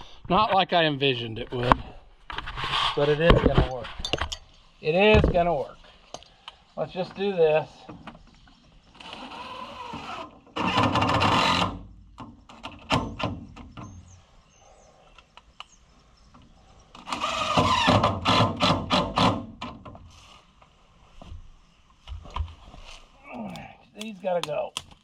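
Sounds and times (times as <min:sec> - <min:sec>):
power drill driving screws: 0:09.0 - 0:11.8, 0:17.0 - 0:19.5.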